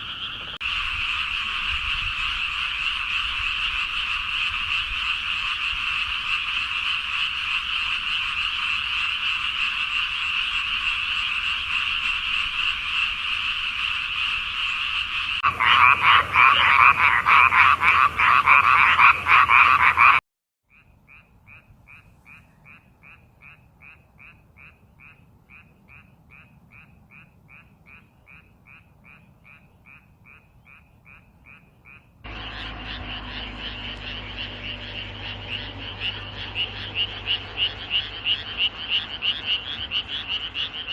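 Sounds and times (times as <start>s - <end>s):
frog chorus: 0.0s - 40.9s
frog short calls: 0.0s - 40.9s
rapid pulsed frog croaking: 0.0s - 40.9s
low hum: 32.2s - 40.4s.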